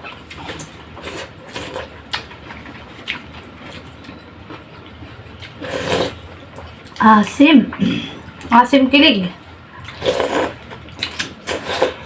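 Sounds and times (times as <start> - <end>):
person chewing food: 0.0 - 7.0, 9.7 - 12.0.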